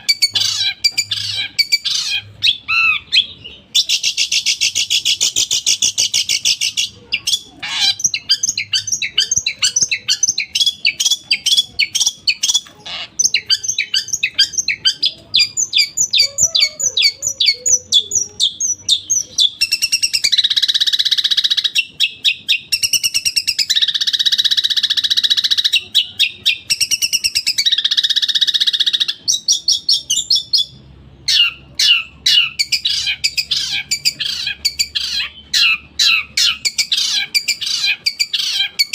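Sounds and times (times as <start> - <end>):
shrike harsh rasping calls: 0.0 - 21.8
shrike chattering song: 0.0 - 38.9.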